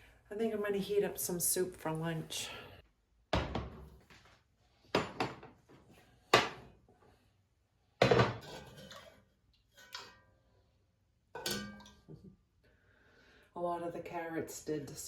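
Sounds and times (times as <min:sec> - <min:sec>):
dishes clattering and clinking: 0:04.9 - 0:05.6, 0:06.3 - 0:06.7, 0:08.0 - 0:09.2, 0:11.4 - 0:12.2.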